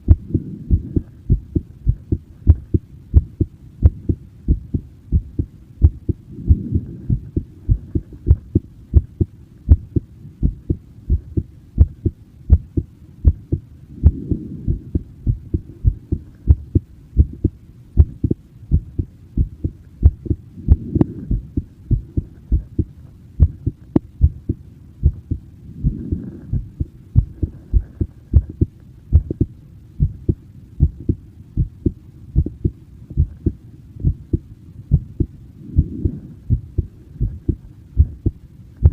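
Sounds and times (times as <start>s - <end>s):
heartbeat thumps: 0.0s - 38.9s.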